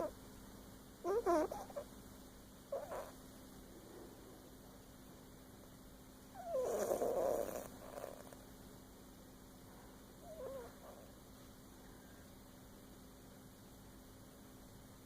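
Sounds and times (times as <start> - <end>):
cat snoring with squeaky note: 1.0 - 1.9, 2.7 - 3.2, 6.3 - 8.4, 10.2 - 11.2.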